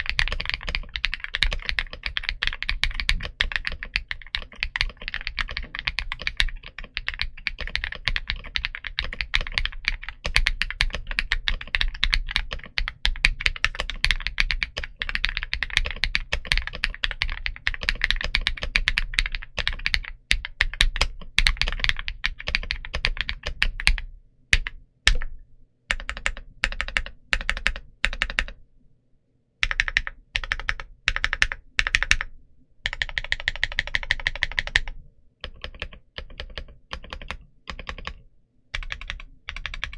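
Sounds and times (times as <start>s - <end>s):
typing on mechanical keyboard: 0.0s - 25.3s, 25.9s - 28.6s, 29.6s - 39.9s.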